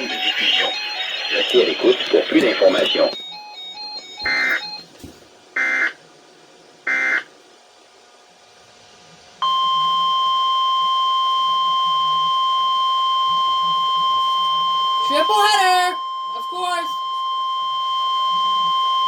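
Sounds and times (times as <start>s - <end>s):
digital alert data bursts: 0.0s - 3.5s, 4.2s - 4.8s.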